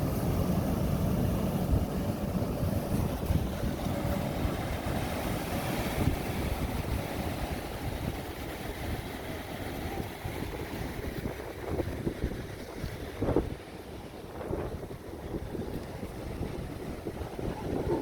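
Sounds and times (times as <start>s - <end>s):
ocean surf: 0.0s - 18.0s
wind buffeting microphone: 0.0s - 18.0s.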